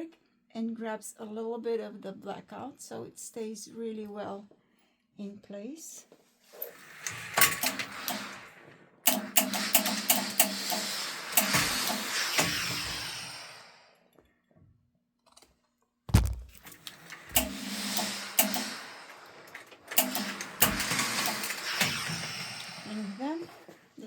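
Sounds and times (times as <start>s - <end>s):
hiss: 9.4s - 14.0s, 17.4s - 23.4s
low thump: 16.1s - 16.6s.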